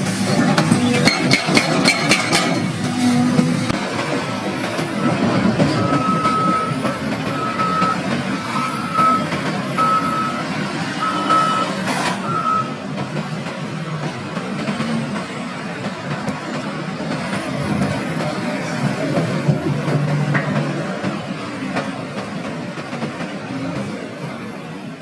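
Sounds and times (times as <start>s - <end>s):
diesel machinery running: 0.0s - 25.0s
backup alarm beeping: 5.0s - 12.8s.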